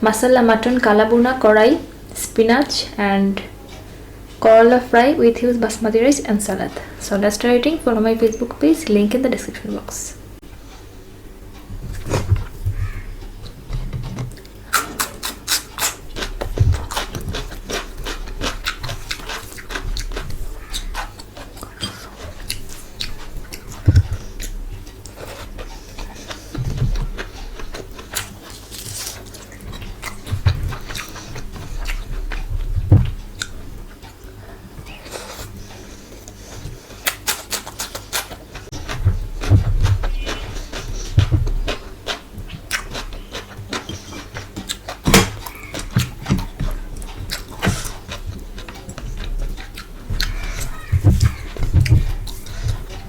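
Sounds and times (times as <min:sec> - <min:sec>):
chewing and biting: 0:11.5 - 0:53.0.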